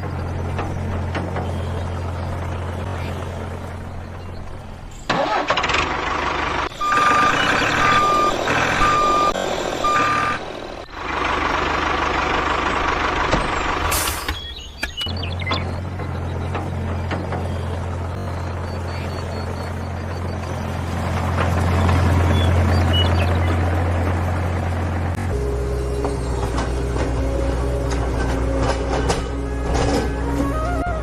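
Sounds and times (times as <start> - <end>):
truck engine running: 0.0 - 31.0
reversing alarm beeping: 6.7 - 11.0.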